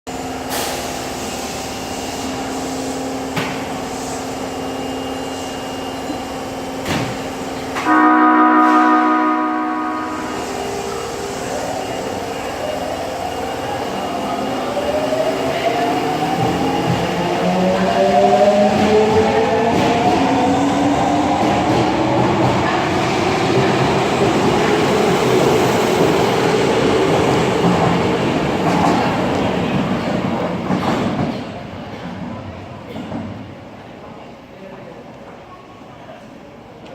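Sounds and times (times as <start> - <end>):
train hum: 0.1 - 36.9
train horn chord: 7.8 - 10.6.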